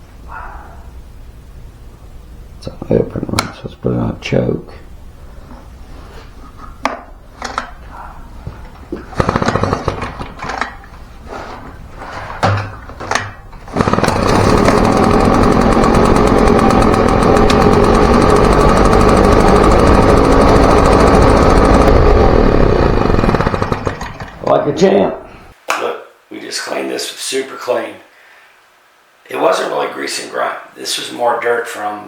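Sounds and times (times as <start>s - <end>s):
recoil starter yanks: 7.3s - 25.3s
leaf blower engine running: 8.6s - 25.5s.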